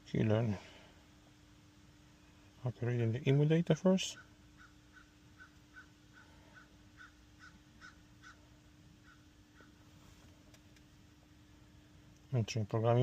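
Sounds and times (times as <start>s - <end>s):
faint steady hum: 0.0s - 13.0s
distant bird chirps: 4.1s - 9.8s.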